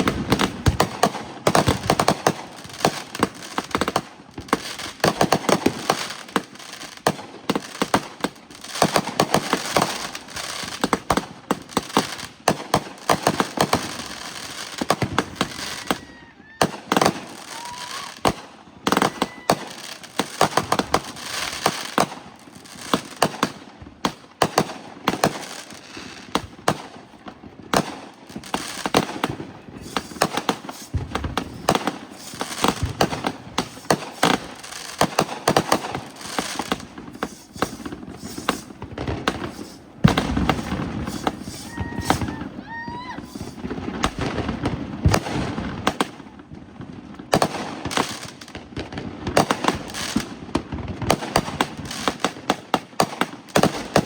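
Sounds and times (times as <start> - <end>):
fireworks and firecrackers banging: 0.0 - 54.0
firework whistling glides: 13.8 - 21.6, 28.4 - 44.4.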